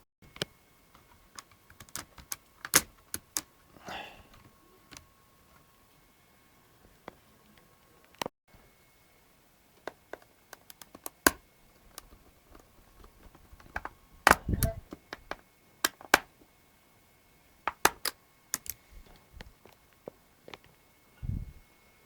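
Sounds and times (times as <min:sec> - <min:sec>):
faint high whine: 0:03.4 - 0:09.8
hands tapping on laptop: 0:17.7 - 0:18.8.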